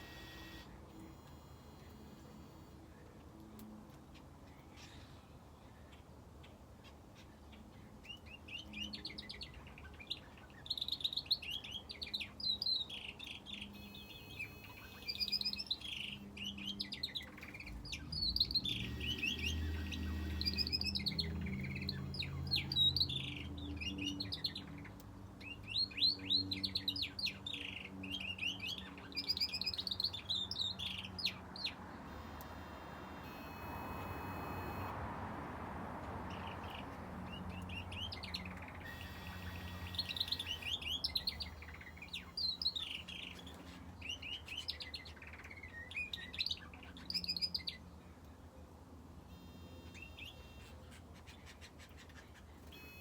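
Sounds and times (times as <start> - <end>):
finches chirping: 8.1 - 34.9, 36.3 - 47.8.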